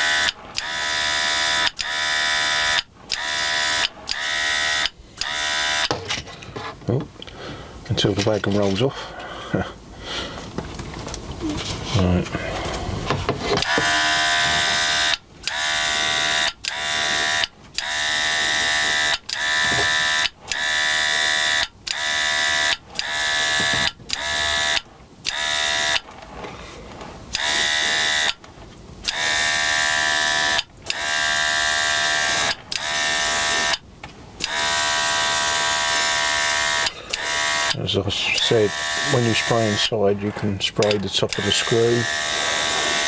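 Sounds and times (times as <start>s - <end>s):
airbrush motor buzzing: 0.0s - 5.9s, 13.6s - 26.0s, 27.3s - 28.4s, 29.0s - 33.8s, 34.4s - 39.9s, 40.8s - 43.0s.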